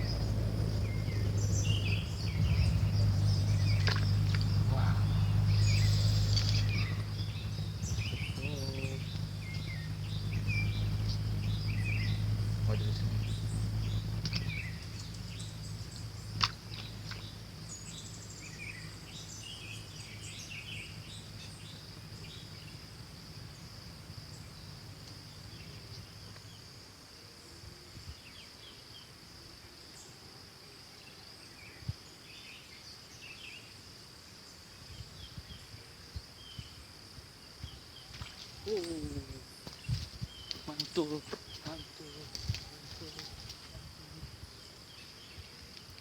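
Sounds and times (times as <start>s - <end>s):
low hum: 0.0s - 26.6s
birds chirping: 0.0s - 26.7s, 37.6s - 46.0s
insects buzzing: 0.0s - 46.0s.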